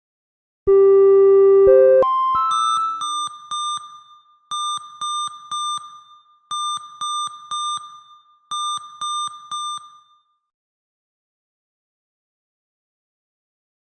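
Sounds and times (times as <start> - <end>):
digital timer alarm beeping: 0.7 - 10.3.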